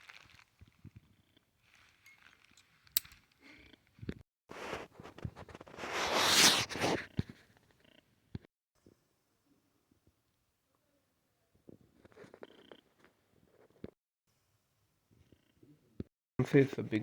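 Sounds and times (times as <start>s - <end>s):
holster rustling: 1.6s - 3.4s.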